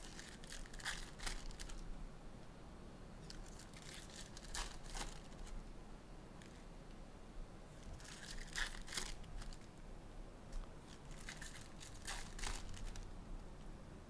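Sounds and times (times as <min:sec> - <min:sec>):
card pack wrappers crinkling: 0:00.0 - 0:01.8, 0:03.2 - 0:05.5, 0:07.8 - 0:09.7, 0:10.9 - 0:13.1.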